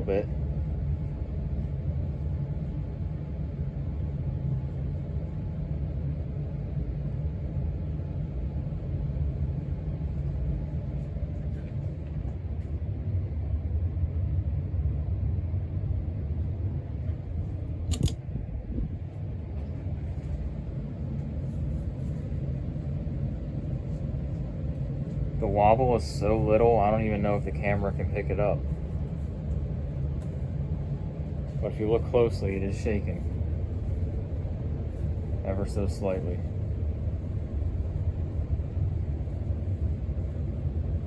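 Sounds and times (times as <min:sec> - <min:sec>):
ceiling fan air rumble: 0:00.0 - 0:41.0
faint motor hum: 0:00.0 - 0:41.0
sharp click: 0:17.9 - 0:18.2.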